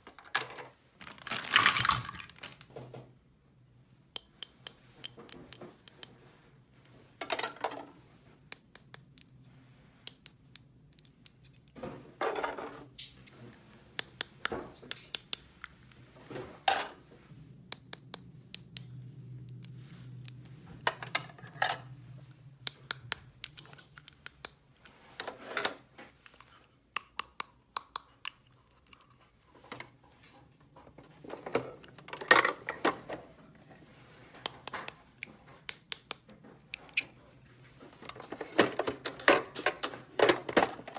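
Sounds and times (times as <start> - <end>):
rustling and scraping: 0.0 - 2.9, 36.4 - 40.9
plastic toy pieces clicking: 10.1 - 11.8, 14.0 - 15.8, 22.6 - 24.9.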